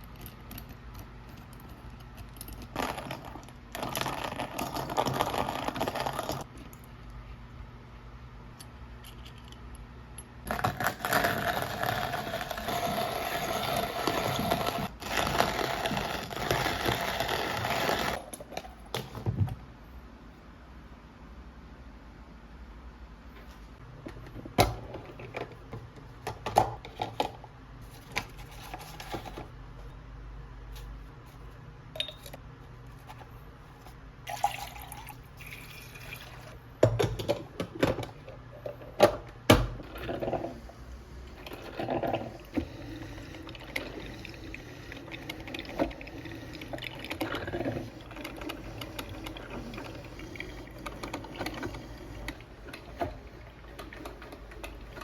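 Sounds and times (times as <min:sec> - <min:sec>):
water sounds in small room: 0:33.8 - 0:38.7, 0:39.6 - 0:55.0.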